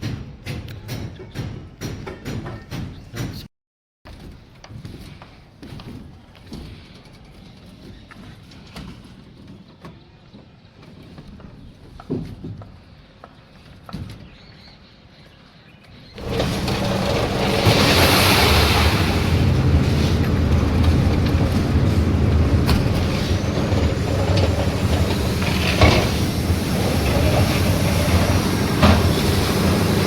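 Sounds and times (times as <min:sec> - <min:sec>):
machinery engine droning: 0:16.2 - 0:30.0
short clanks: 0:16.2 - 0:30.0.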